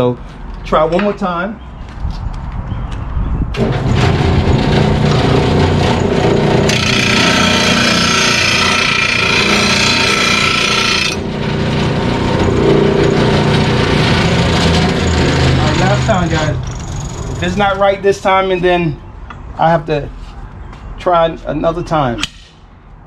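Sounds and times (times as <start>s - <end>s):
sharpener motor and grinding wheel: 3.6s - 16.2s
blade grinding against wheel: 3.6s - 17.6s.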